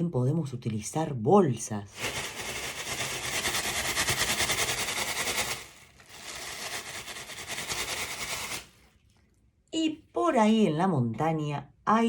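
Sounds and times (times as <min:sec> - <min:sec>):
bag crinkling: 0:01.9 - 0:08.8.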